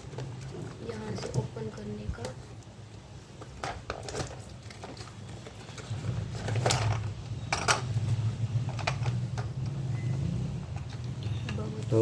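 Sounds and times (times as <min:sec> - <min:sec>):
packaging rustling and scraping: 0:03.3 - 0:11.5.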